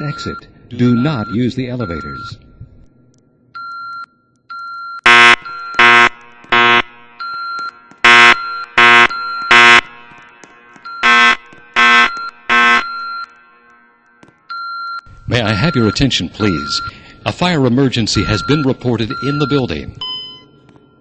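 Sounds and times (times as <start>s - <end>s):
steady high beep: 0.0s - 2.4s, 14.5s - 17.0s, 18.0s - 21.0s
fire alarm horn blasts: 5.0s - 13.7s.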